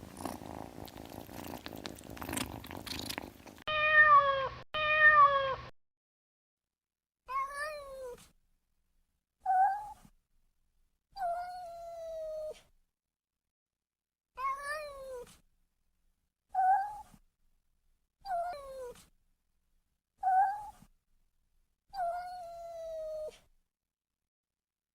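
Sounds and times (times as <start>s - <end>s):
cat meowing: 0.9s - 5.7s, 14.4s - 15.2s, 22.0s - 23.4s.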